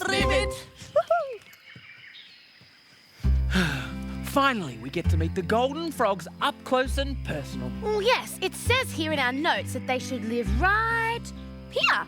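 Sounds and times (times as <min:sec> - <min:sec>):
background music: 0:00.0 - 0:00.8, 0:03.3 - 0:12.0.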